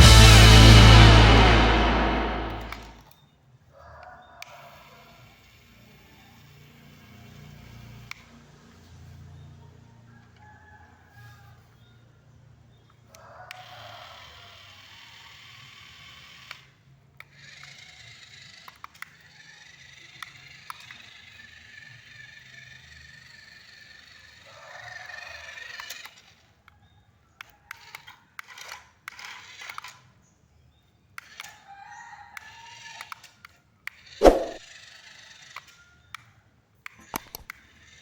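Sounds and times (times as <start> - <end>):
toy motors whirring: 4.4 - 9.3, 13.5 - 26.8, 27.4 - 30.2, 31.2 - 31.7, 32.4 - 38.0
plastic clicks: 36.9 - 37.6.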